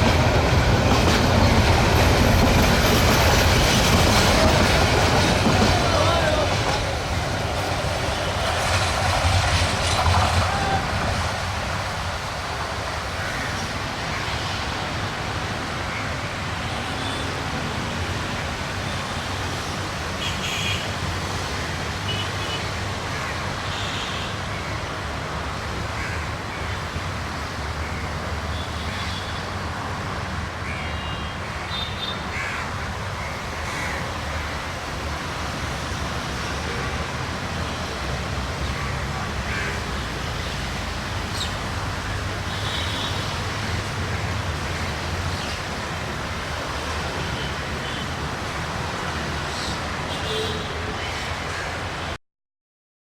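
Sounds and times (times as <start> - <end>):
crows cawing: 13.1 - 14.2, 25.9 - 26.8, 32.1 - 34.6, 38.7 - 40.0.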